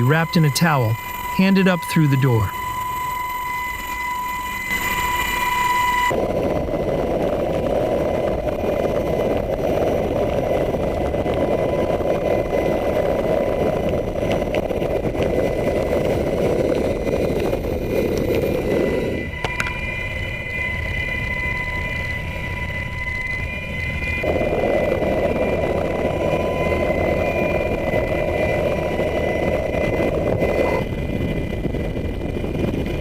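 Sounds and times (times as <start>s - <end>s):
helicopter turbine and gearbox whine: 0.0s - 33.0s.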